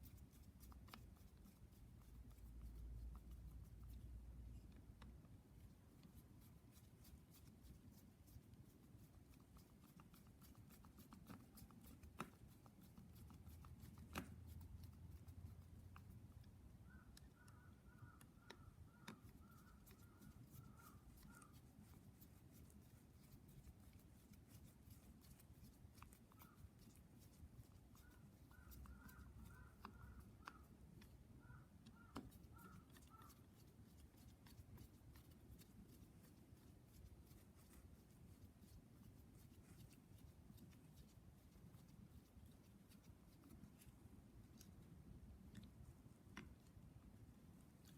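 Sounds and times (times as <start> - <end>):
faint high chirping: 16.8 - 21.6.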